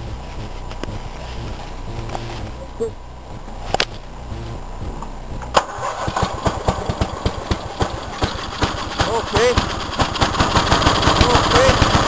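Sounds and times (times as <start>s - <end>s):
lawn mower engine starting: 5.4s - 12.0s.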